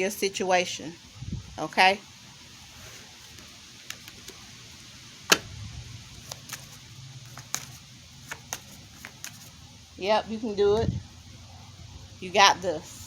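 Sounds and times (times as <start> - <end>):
cards clicking and tapping: 6.2 - 9.5.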